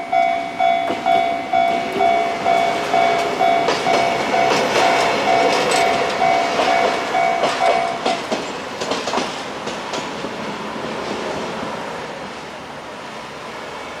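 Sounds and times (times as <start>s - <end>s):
level crossing alarm ringing: 0.0s - 8.3s
train wheels clacking on rails: 0.0s - 12.5s.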